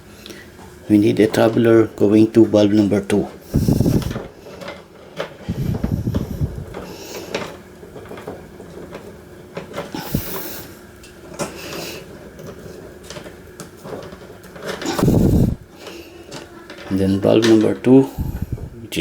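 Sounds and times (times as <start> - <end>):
wire and fittings clicking: 3.5 - 18.7.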